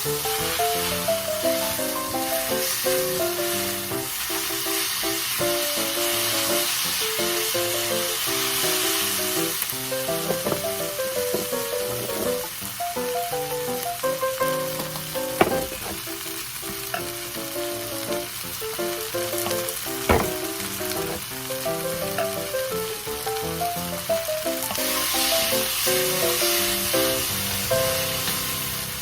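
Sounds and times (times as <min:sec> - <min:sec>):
background music simple melody: 0:00.0 - 0:29.0
food sizzling in frying pan: 0:00.0 - 0:29.0
sharp knocks: 0:15.4 - 0:16.1, 0:19.5 - 0:20.5.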